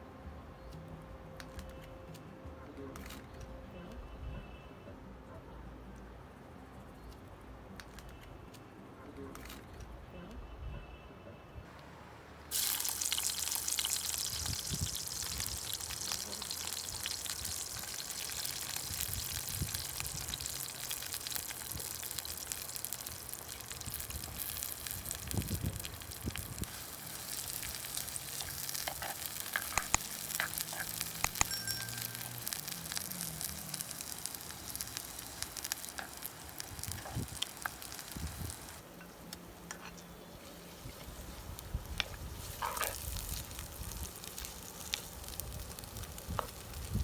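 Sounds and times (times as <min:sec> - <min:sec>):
food sizzling in hot oil: 0:12.5 - 0:38.8, 0:40.6 - 0:47.0
sharp clicks: 0:31.2 - 0:31.6.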